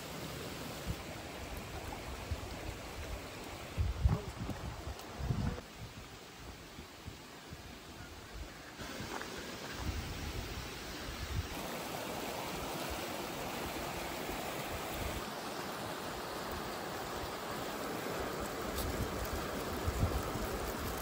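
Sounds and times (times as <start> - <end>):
running water: 0.0 - 21.0
wind buffeting microphone: 1.8 - 6.0, 18.7 - 21.0.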